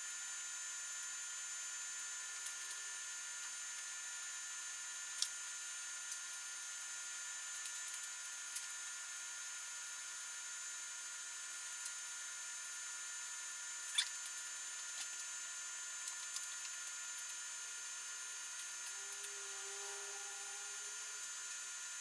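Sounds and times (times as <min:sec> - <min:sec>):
electric fan hissing with whine: 0:00.0 - 0:22.0.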